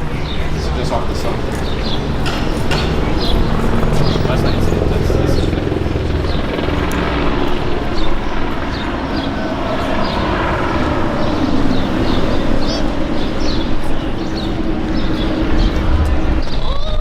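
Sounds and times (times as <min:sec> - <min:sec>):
vehicle rumble: 0:10.7 - 0:17.0.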